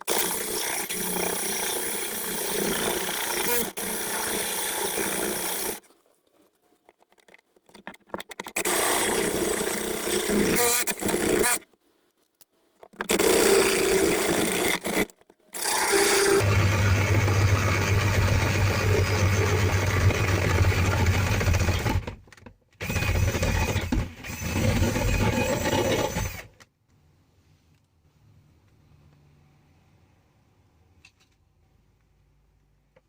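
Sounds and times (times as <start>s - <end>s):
power tool running: 13.1s - 22.1s.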